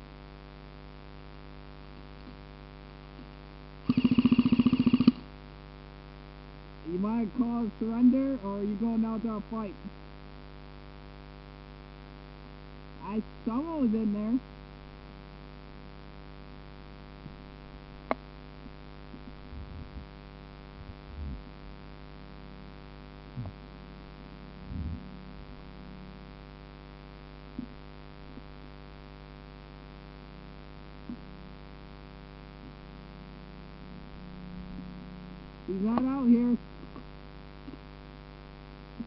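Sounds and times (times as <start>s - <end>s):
electrical hum: 0.0s - 39.0s
short low thuds: 23.4s - 23.6s, 24.6s - 25.1s.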